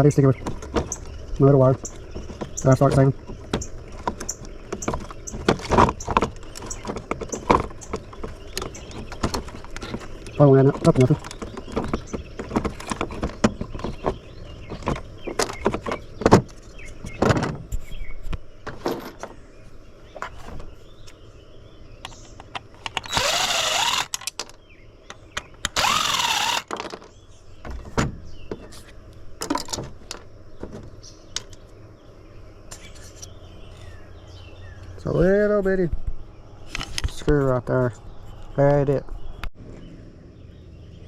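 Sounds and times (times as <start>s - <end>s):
power drill whining: 23.0s - 24.2s, 25.7s - 26.7s.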